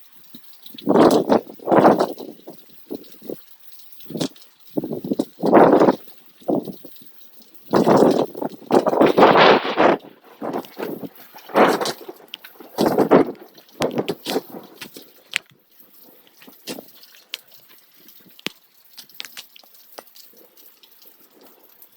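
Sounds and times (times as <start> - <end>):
rushing rain noise: 0.0 - 21.9
sharp crackling clicks: 0.2 - 21.9.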